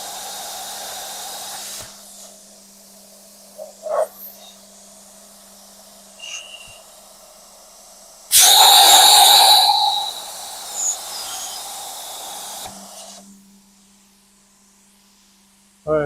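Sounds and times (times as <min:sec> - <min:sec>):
plasma cutter torch hissing: 0:00.0 - 0:02.4, 0:03.3 - 0:13.3.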